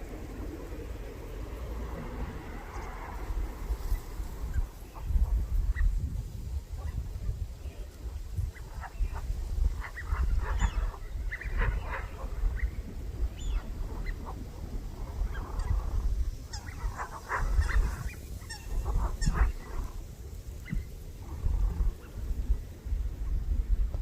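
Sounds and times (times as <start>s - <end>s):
steady low rumble: 0.0s - 24.0s
birds making harsh calls: 8.5s - 20.0s.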